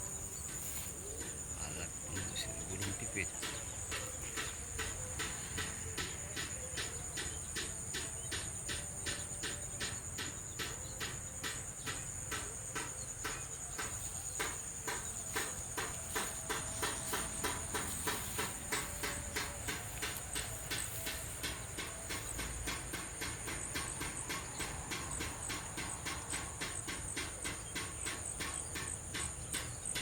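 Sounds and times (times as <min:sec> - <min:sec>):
high buzz of insects: 0:00.0 - 0:30.0
bird scarer clacking: 0:13.8 - 0:24.9.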